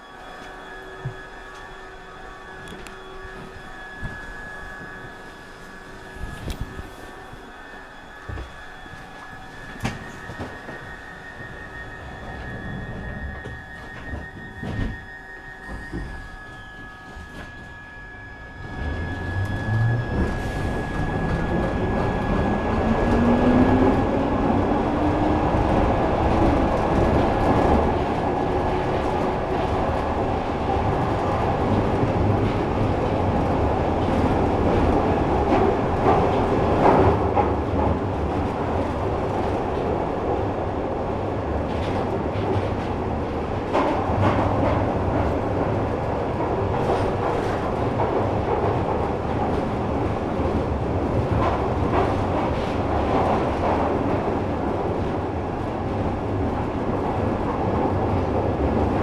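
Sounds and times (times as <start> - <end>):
train motor whine: 0.0 - 25.4
rumble of wheels on rails: 0.0 - 59.0.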